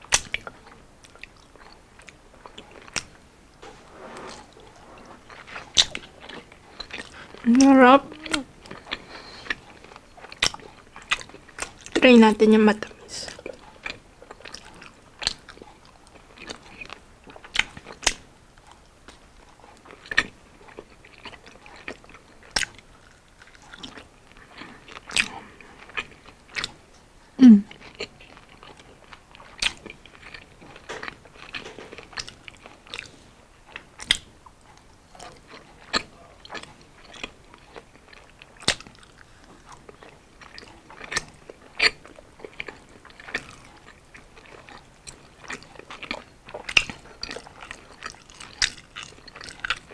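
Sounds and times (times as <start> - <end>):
crisp crunching and chewing: 35.2 - 49.9.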